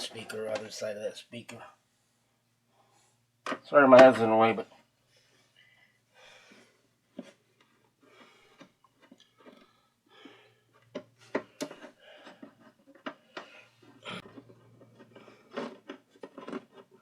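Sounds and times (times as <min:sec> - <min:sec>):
hands clicking and tapping parts: 0:07.1 - 0:17.0.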